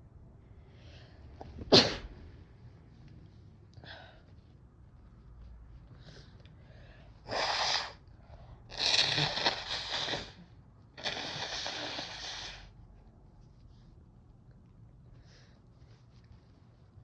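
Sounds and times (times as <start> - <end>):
person sneezing: 1.6 - 2.1.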